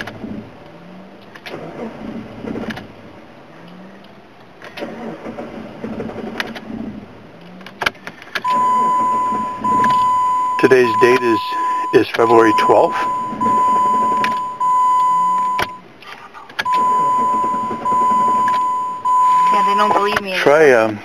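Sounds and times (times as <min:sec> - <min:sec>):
starter motor cranking engine: 0:04.8 - 0:06.4
electronic chime tone: 0:08.5 - 0:15.8, 0:16.7 - 0:20.0.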